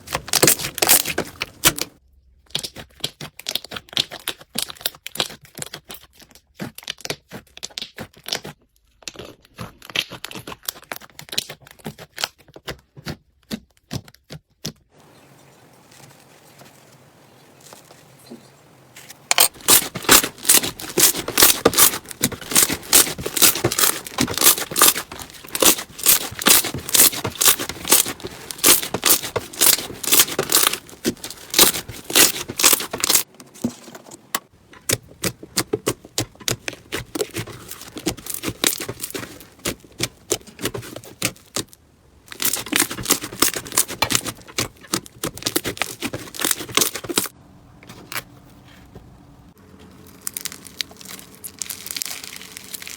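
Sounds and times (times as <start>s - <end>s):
slime crackling and popping: 19.3s - 33.3s, 36.1s - 47.3s, 49.9s - 52.9s.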